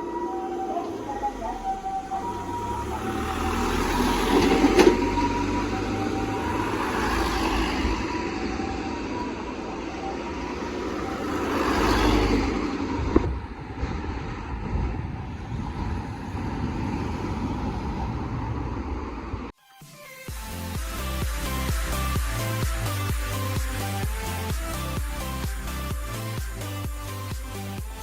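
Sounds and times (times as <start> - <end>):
faint ambulance siren: 0.0 - 19.5
road noise: 0.0 - 19.6, 20.6 - 28.0.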